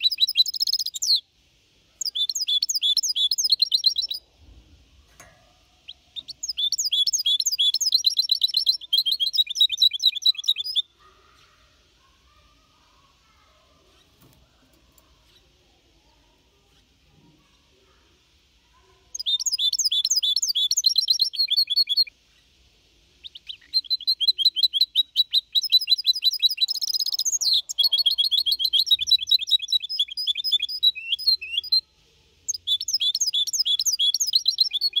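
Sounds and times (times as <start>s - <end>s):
bird singing high trills: 0.0s - 1.2s, 2.0s - 4.2s, 5.8s - 11.0s, 19.1s - 22.1s, 23.2s - 31.8s, 32.5s - 35.0s.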